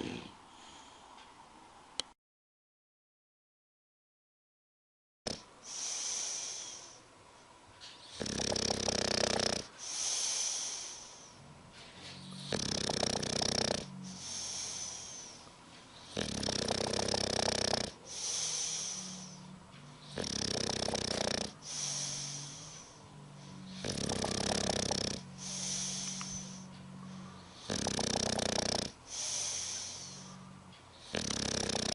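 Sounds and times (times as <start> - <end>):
dog snoring: 0.0 - 0.4, 5.3 - 7.0, 8.1 - 11.3, 12.0 - 15.4, 16.0 - 31.9.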